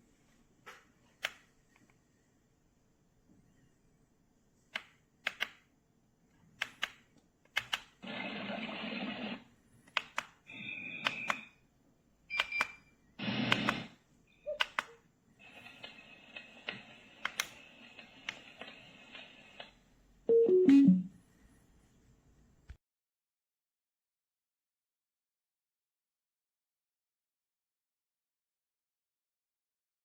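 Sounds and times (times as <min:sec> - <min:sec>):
device clicks and taps: 0:09.9 - 0:10.4.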